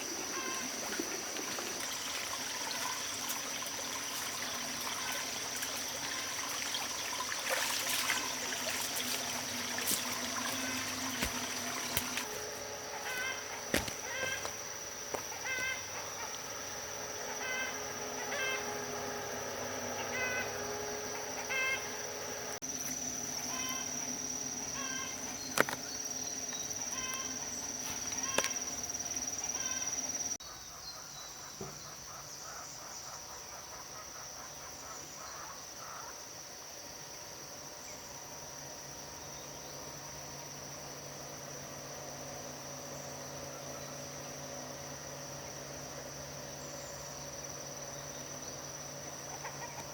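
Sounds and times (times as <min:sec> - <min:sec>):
insects droning: 0:00.0 - 0:49.9.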